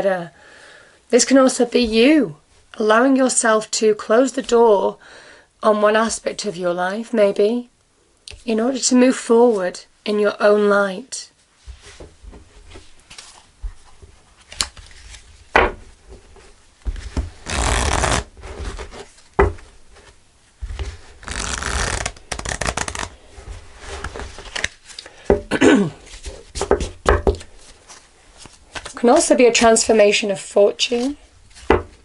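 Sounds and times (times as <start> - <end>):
cards being shuffled: 11.7 - 25.1, 26.0 - 30.1, 30.8 - 32.0.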